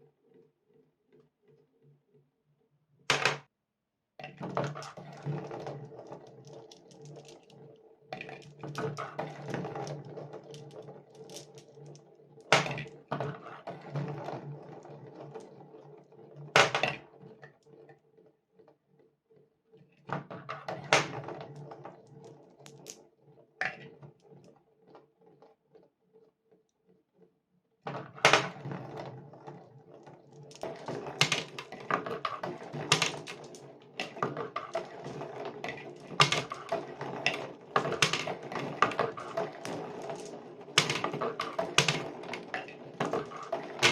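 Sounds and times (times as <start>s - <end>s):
marbles rolling on cardboard: 3.1s - 3.5s, 4.2s - 17.9s, 20.1s - 25.4s, 27.9s - 43.9s
marbles clacking on track: 4.2s - 15.5s, 20.2s - 23.0s, 27.9s - 43.9s.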